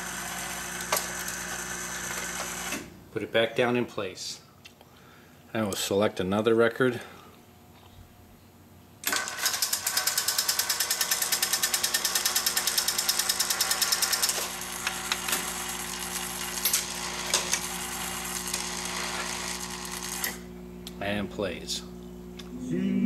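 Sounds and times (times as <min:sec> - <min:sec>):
mechanical hum: 0:00.0 - 0:23.0
jukebox mechanism rapid clicking: 0:09.0 - 0:15.4.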